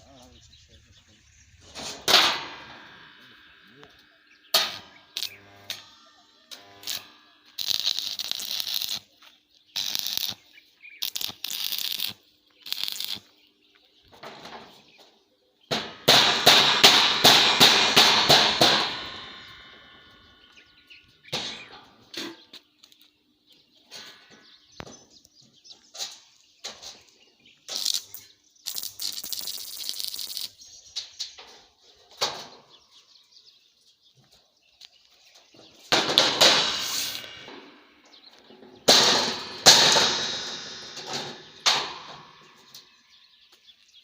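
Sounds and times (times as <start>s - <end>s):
rapid metal strikes rattling: 1.3s - 3.8s, 15.7s - 20.4s, 35.9s - 42.8s.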